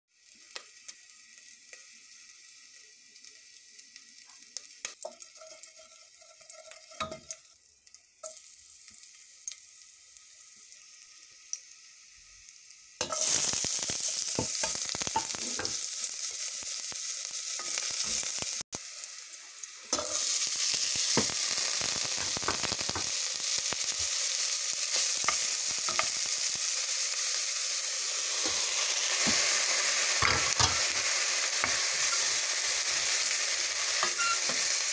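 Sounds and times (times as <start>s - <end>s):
food sizzling in a pan: 0.1s - 34.9s.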